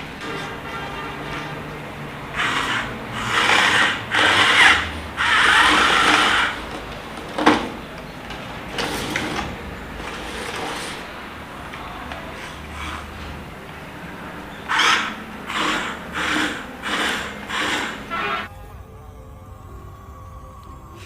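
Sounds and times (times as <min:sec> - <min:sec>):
toy electric motors whirring: 0:02.3 - 0:07.8, 0:08.6 - 0:11.1, 0:11.7 - 0:13.4, 0:14.6 - 0:18.5.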